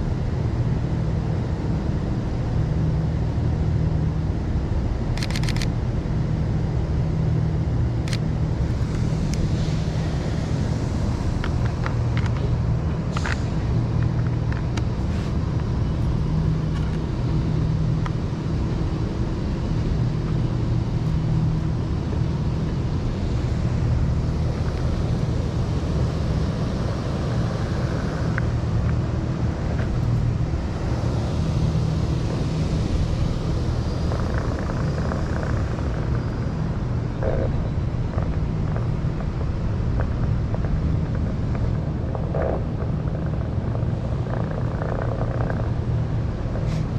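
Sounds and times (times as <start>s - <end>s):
short clicks: 5.2s - 5.7s.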